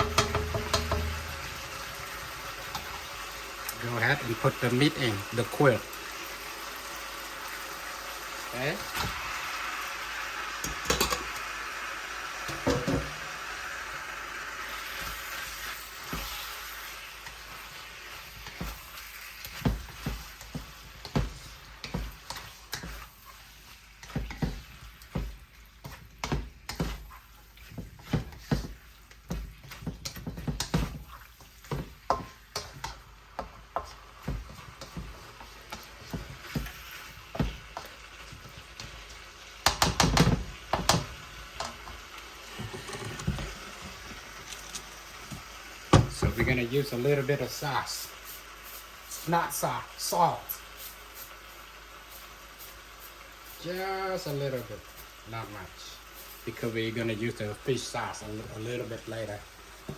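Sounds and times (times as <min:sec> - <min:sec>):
spatula scraping a pan: 0:00.0 - 0:05.1, 0:14.4 - 0:44.8
meat sizzling in hot oil: 0:00.0 - 0:59.9.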